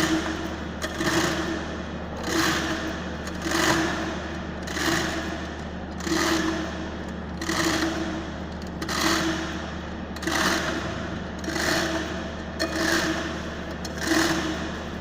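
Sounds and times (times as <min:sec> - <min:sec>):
steady low hum: 0:00.0 - 0:15.0
chain hoist chain and ratchet clattering: 0:02.2 - 0:04.0, 0:10.2 - 0:14.9.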